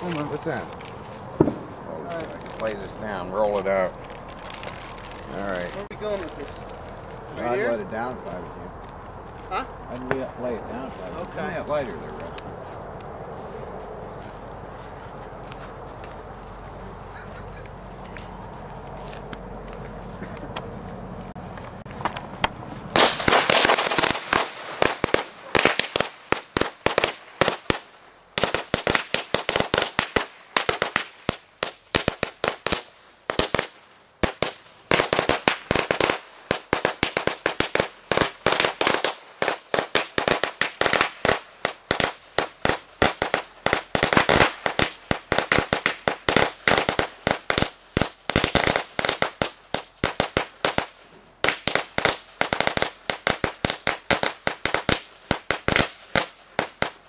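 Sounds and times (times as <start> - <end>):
firecrackers going off: 0.0 - 8.6, 21.6 - 57.0.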